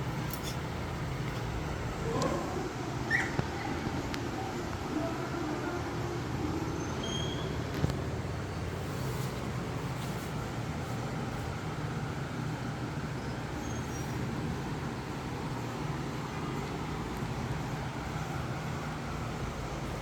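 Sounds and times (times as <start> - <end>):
faint high chirps: 6.5 - 7.6.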